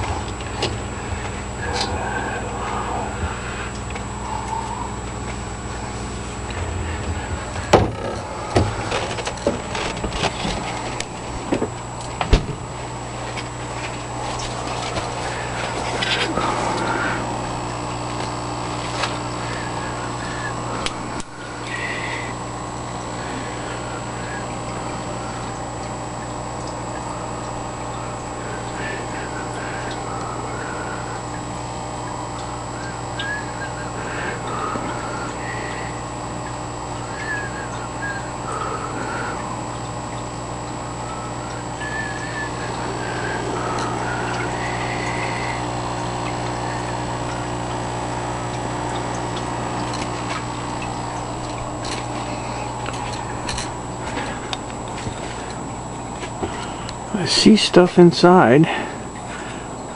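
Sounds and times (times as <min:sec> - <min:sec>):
electrical hum: 0:00.0 - 0:59.9
bird calls: 0:41.0 - 0:45.6.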